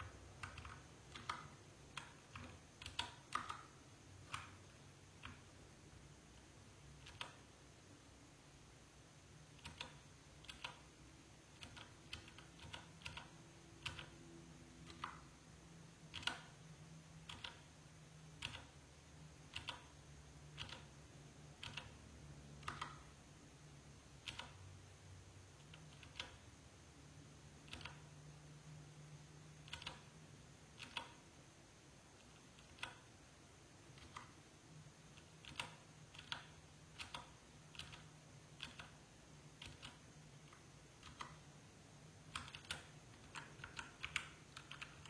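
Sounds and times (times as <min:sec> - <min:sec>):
mechanical keyboard key presses: 0:00.0 - 0:05.5, 0:07.0 - 0:07.5, 0:09.5 - 0:10.8, 0:11.5 - 0:14.2, 0:14.8 - 0:15.3, 0:16.1 - 0:16.6, 0:17.2 - 0:17.7, 0:18.3 - 0:18.8, 0:19.5 - 0:20.9, 0:21.6 - 0:22.0, 0:22.6 - 0:23.2, 0:24.2 - 0:24.6, 0:25.6 - 0:26.4, 0:27.6 - 0:28.1, 0:29.6 - 0:30.1, 0:30.7 - 0:31.2, 0:33.9 - 0:34.4, 0:35.2 - 0:39.0, 0:39.6 - 0:41.4, 0:42.3 - 0:45.0.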